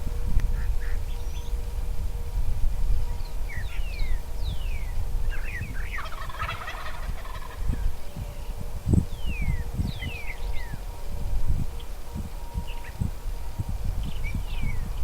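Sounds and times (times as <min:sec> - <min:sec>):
steady low rumble: 0:00.0 - 0:15.0
birds whistling: 0:00.5 - 0:01.6, 0:03.0 - 0:10.9, 0:14.0 - 0:15.0
turkey gobbling: 0:05.4 - 0:07.7.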